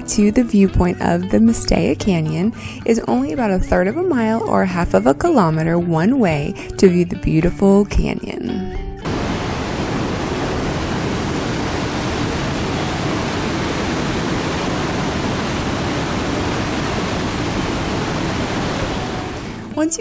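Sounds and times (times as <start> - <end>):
river rushing through canyon: 9.1 - 19.7.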